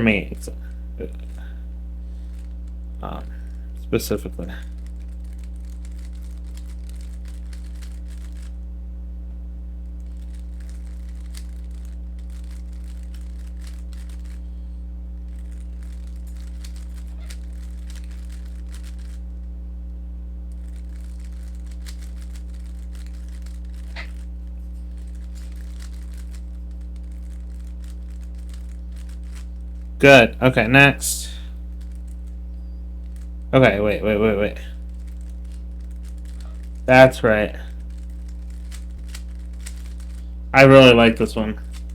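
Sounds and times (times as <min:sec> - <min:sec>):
low electrical hum: 0:00.0 - 0:41.9
rubik's cube clicking: 0:04.7 - 0:08.6, 0:10.0 - 0:14.4, 0:15.4 - 0:19.2, 0:20.5 - 0:24.3, 0:25.0 - 0:29.5, 0:34.9 - 0:36.9, 0:37.8 - 0:40.2.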